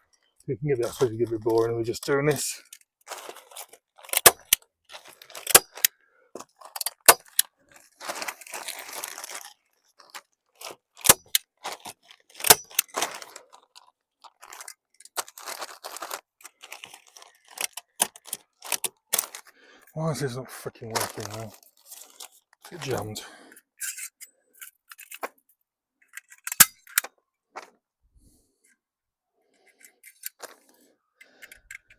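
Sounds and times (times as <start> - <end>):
plastic sheet crinkling: 3.0 - 19.6, 20.5 - 23.2.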